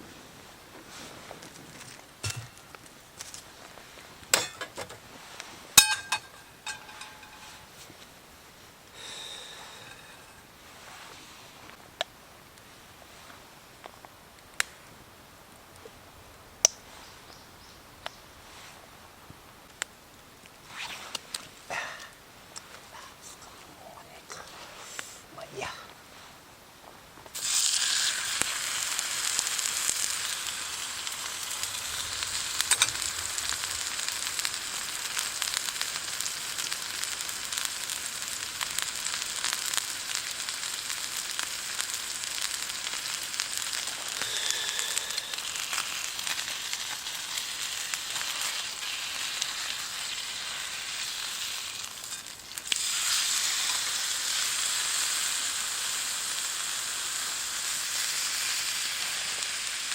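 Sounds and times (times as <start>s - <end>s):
food sizzling in a pan: 3.5s - 7.9s, 9.0s - 11.5s, 27.3s - 59.9s.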